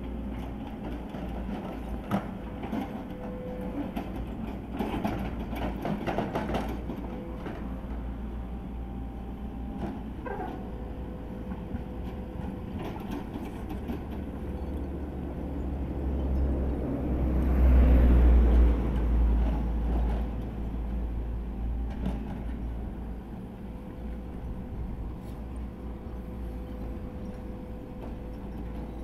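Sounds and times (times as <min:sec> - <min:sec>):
vehicle passing by: 0:15.0 - 0:21.2.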